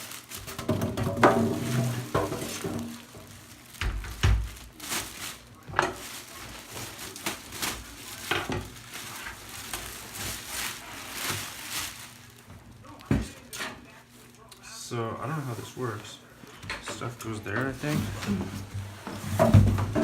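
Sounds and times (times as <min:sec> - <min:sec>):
wrapping rustling: 0:00.0 - 0:14.6, 0:17.2 - 0:20.0.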